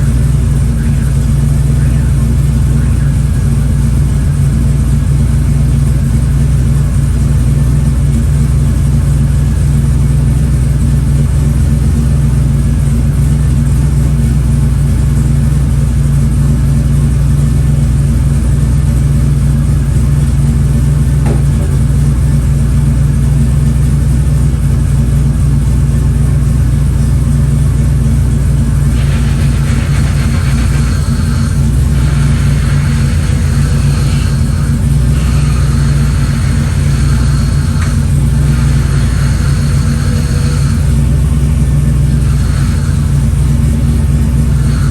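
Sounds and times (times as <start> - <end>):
car engine idling: 0.0 - 44.9
high hiss: 28.9 - 41.0, 42.0 - 43.3.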